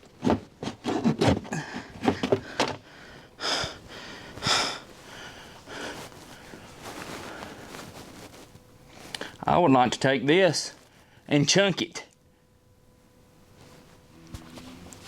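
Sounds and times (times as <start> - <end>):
man breathing hard: 1.5 - 7.9.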